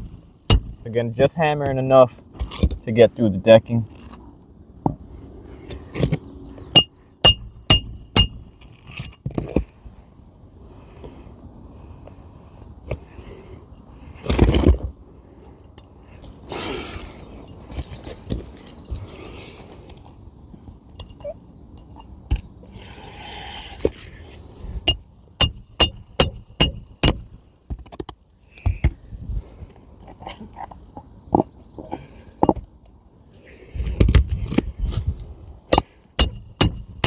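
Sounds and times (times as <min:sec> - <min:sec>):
light clinks: 0:20.9 - 0:22.4.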